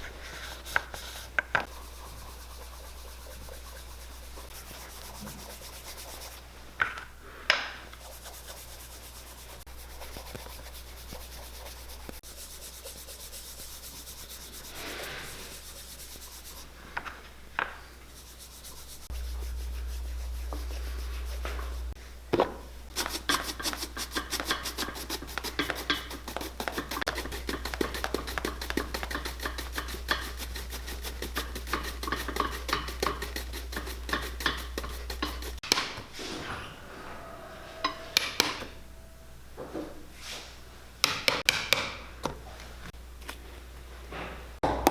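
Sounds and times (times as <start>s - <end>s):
brushing leather shoe sole: 0.0s - 6.4s, 8.0s - 16.7s, 18.1s - 22.0s, 22.9s - 35.6s.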